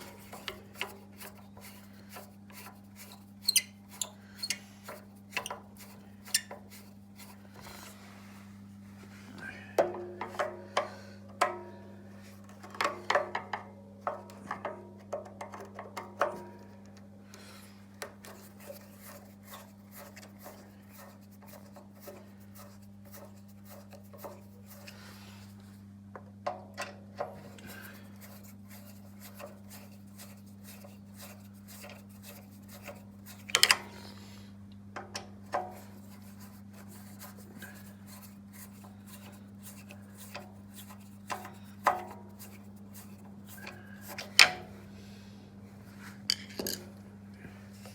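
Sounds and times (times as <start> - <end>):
tools clicking and tapping: 46.3 - 46.9.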